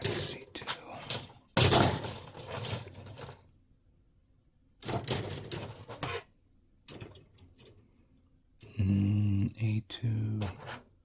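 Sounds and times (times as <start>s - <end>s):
plastic parts rattling and clicking: 0.0s - 3.5s, 4.8s - 6.3s, 6.9s - 7.9s.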